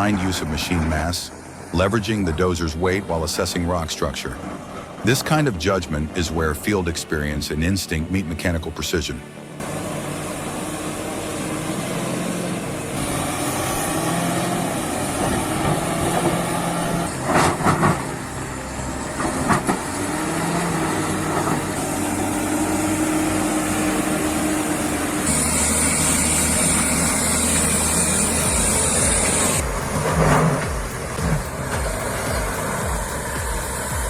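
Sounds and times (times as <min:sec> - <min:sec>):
bulldozer diesel engine running: 0:00.0 - 0:34.0
steel tracks clattering: 0:13.0 - 0:34.0
loud sharp knocks: 0:28.5 - 0:34.0.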